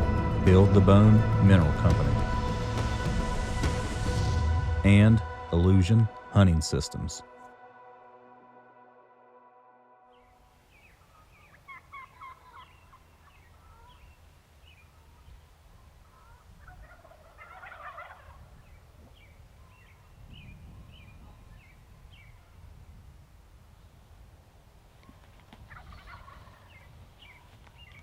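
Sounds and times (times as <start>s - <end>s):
turkey gobbling: 10.7s - 20.0s, 25.0s - 28.0s
rapid rattling turkey call: 10.9s - 14.0s, 16.1s - 18.4s, 25.7s - 26.9s.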